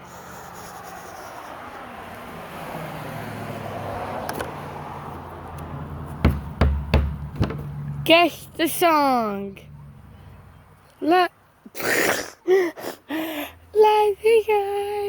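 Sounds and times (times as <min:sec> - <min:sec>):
vehicle passing by: 0:00.0 - 0:10.9
loud low thumps: 0:06.2 - 0:07.7.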